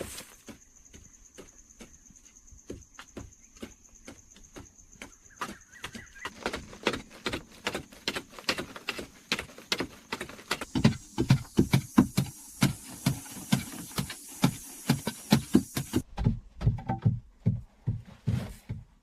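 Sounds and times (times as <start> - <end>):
hand tool blows: 10.6 - 16.0
steady high hiss: 10.6 - 16.0.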